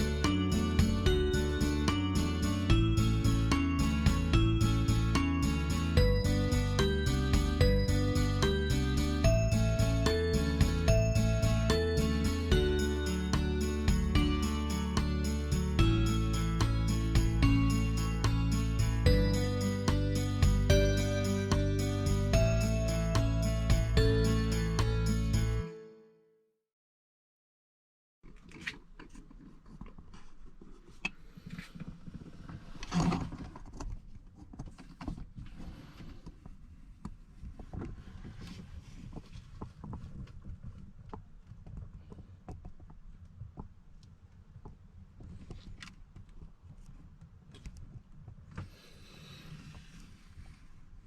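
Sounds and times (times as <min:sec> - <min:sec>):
steady low rumble: 0:00.0 - 0:24.3.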